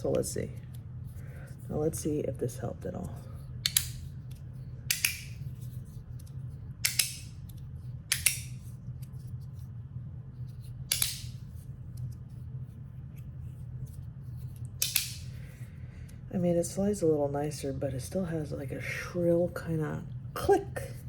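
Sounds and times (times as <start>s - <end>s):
magnetic slider snapping clicks: 3.6s - 4.0s, 4.9s - 5.4s, 6.8s - 7.3s, 8.1s - 8.5s, 10.9s - 11.3s, 14.8s - 15.2s.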